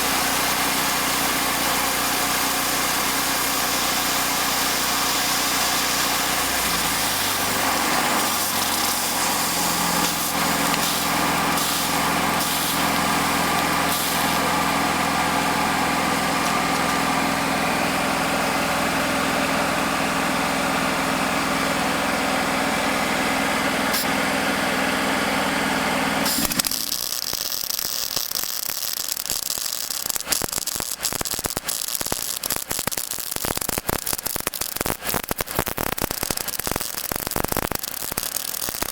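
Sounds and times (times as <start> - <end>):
crackling sputtering noise: 0.0 - 17.5, 26.3 - 38.9
motor humming: 0.0 - 18.0.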